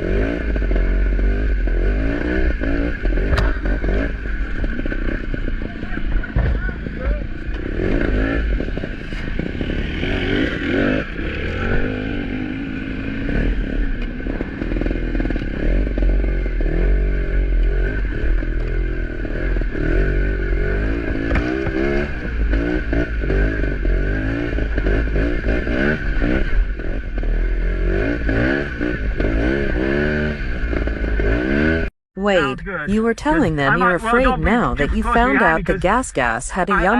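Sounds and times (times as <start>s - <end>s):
vehicle engine under load: 0.0s - 36.0s
vehicle rattles and knocks: 0.4s - 12.0s, 13.9s - 27.5s.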